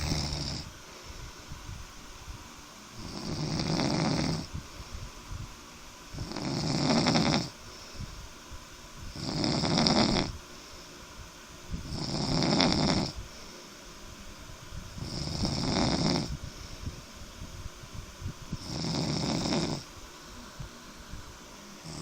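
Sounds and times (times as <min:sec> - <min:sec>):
loud rasping snores: 0:00.0 - 0:00.7, 0:03.0 - 0:04.5, 0:06.2 - 0:07.5, 0:09.2 - 0:10.3, 0:11.9 - 0:13.2, 0:15.0 - 0:16.3, 0:18.6 - 0:19.8
quiet breathing: 0:00.0 - 0:01.9, 0:06.1 - 0:14.1, 0:14.8 - 0:22.0.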